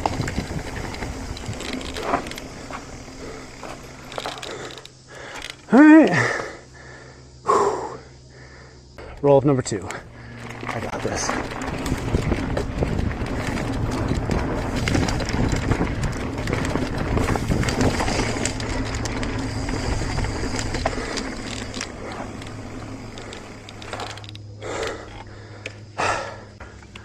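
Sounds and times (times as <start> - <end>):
bike parts rattling: 0.0 - 6.4, 9.0 - 25.9
bike tyres on dirt trail: 0.0 - 7.7, 8.3 - 27.0
person breathing hard: 4.4 - 8.9, 24.6 - 27.0.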